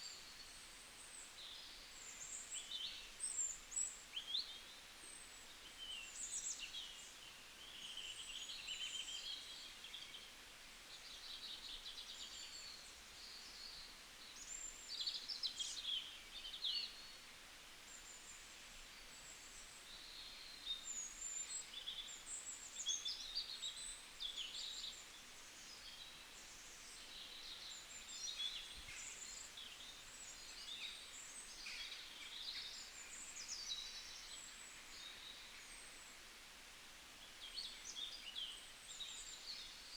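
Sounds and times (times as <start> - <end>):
faint background hiss: 0.0 - 39.9.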